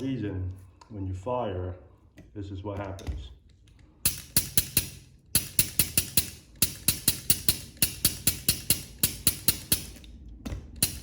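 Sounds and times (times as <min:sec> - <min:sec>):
pneumatic nailer clicking: 0:04.0 - 0:10.1, 0:10.8 - 0:11.0.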